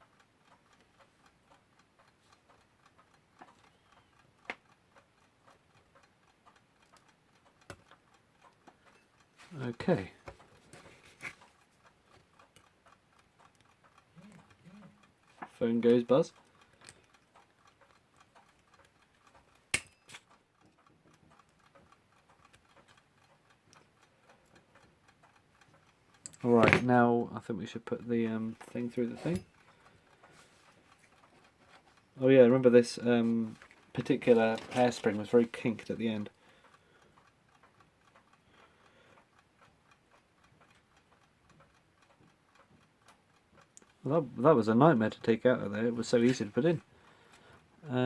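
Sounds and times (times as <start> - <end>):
mechanical clock ticking: 0.0 - 48.0
sharp click: 19.7 - 20.4.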